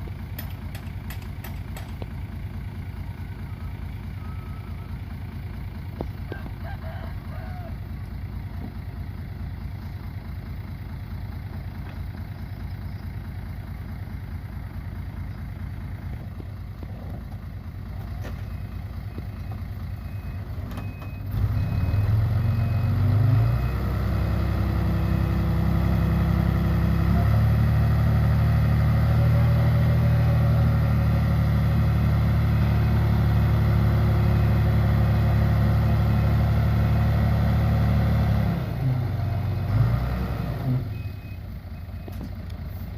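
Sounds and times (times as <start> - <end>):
diesel machine engine idling: 0.0 - 42.9
faint beep: 3.4 - 5.0, 18.4 - 23.9, 40.9 - 42.2.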